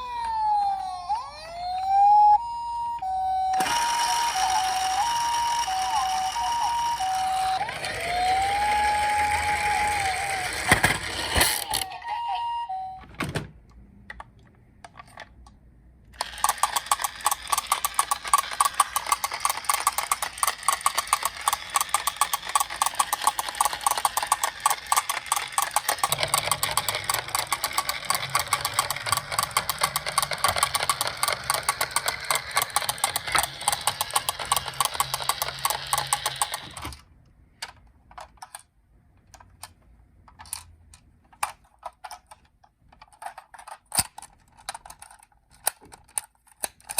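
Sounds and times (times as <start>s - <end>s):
toy cars clattering: 3.6s - 12.0s, 16.2s - 37.0s, 40.3s - 46.9s.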